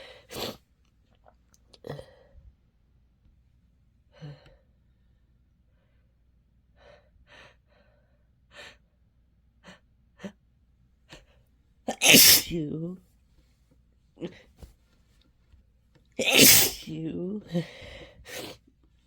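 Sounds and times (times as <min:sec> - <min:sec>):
person sniffing: 0:11.9 - 0:12.6, 0:16.2 - 0:16.9
sharp in-breath before sneeze: 0:11.9 - 0:12.6, 0:16.2 - 0:16.9.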